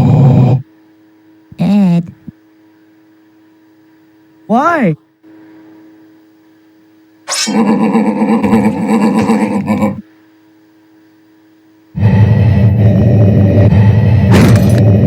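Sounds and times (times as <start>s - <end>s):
cartoon animal-like cry: 1.6s - 2.2s, 7.3s - 10.0s.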